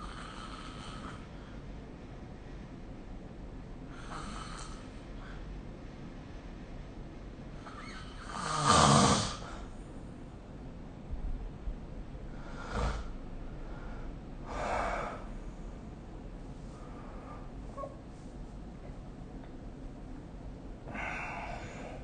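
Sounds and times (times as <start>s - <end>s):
faint breaths: 12.2s - 18.6s, 20.8s - 22.0s.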